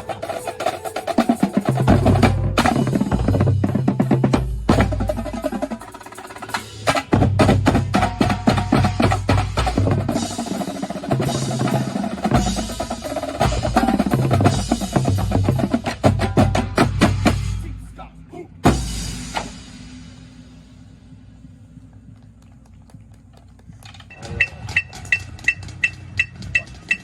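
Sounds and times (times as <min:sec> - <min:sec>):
drumline playing with drum rolls: 0:00.0 - 0:27.0.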